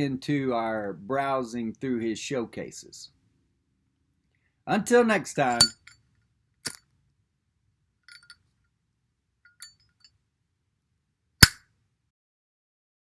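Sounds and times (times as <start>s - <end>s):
light metallic clinks: 5.5s - 6.0s, 8.1s - 8.4s.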